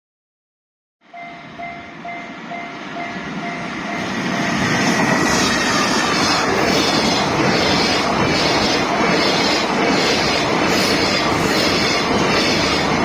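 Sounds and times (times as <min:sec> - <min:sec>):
crossing warning bell ringing: 0:01.0 - 0:10.2
freight train rail noise: 0:01.0 - 0:13.0.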